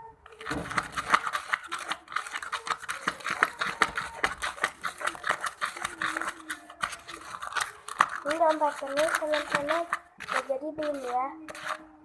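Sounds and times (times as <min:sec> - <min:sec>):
slime being stirred: 0:00.0 - 0:12.0.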